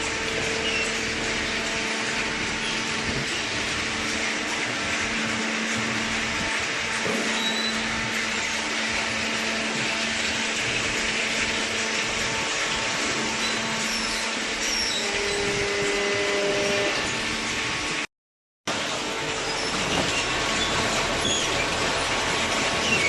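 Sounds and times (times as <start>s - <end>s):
baler motor and pump humming: 0.0s - 18.1s, 18.7s - 23.0s.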